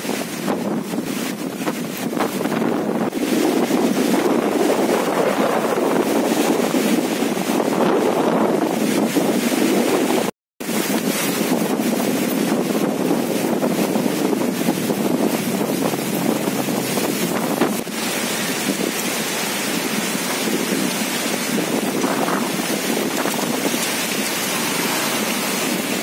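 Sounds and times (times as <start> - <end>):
strong wind on microphone: 0.0 - 26.0.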